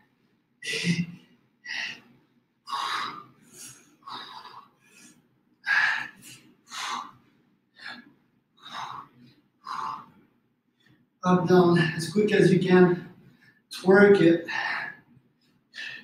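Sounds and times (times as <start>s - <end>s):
man breathing hard: 1.6s - 11.0s, 14.4s - 15.1s, 15.8s - 16.0s.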